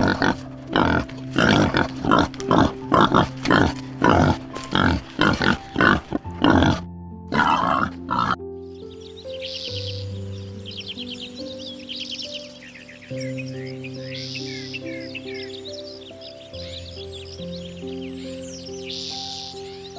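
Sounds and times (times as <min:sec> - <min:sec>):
pig grunting: 0:00.0 - 0:08.4
music with held notes: 0:00.0 - 0:19.9.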